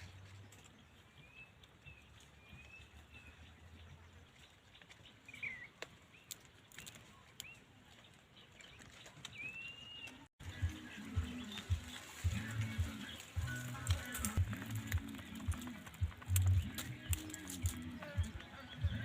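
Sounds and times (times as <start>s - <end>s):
faint whistled bird calls: 9.3s - 13.4s.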